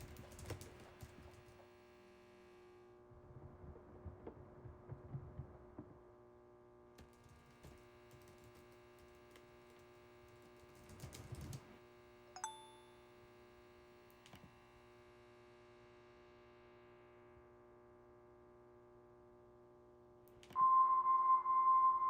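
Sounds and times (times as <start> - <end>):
short electronic tone: 20.6 - 22.0.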